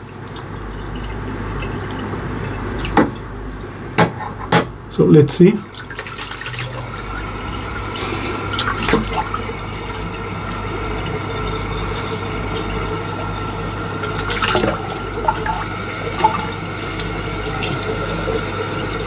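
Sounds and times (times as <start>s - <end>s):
water splashes: 0.0s - 3.7s, 5.6s - 19.0s
tap running into sink: 8.6s - 9.5s.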